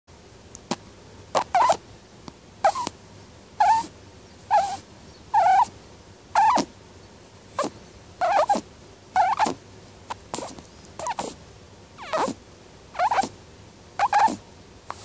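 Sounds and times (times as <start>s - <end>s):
rabbit snoring: 0.7s - 1.8s, 2.6s - 3.0s, 3.6s - 6.8s, 7.5s - 11.4s, 12.0s - 12.4s, 13.0s - 13.4s, 14.0s - 15.0s.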